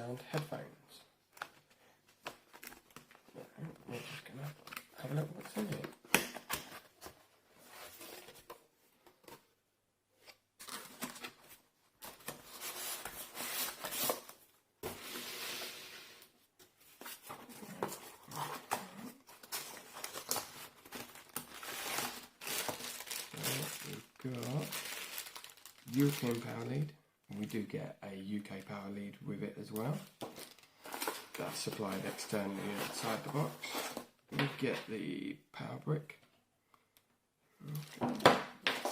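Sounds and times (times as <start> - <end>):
cardboard and plastic rustling: 16.6 - 26.7.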